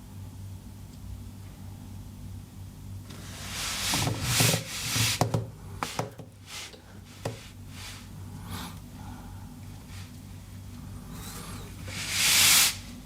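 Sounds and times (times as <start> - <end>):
rubbing and scraping handling noise: 3.1 - 8.2, 11.1 - 12.9.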